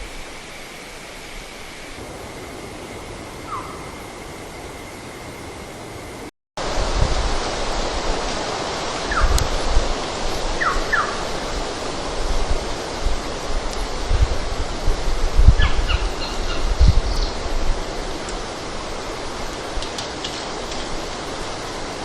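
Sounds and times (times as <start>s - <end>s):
steady rushing hiss: 0.0s - 22.0s
wind thumps on microphone: 6.6s - 21.2s.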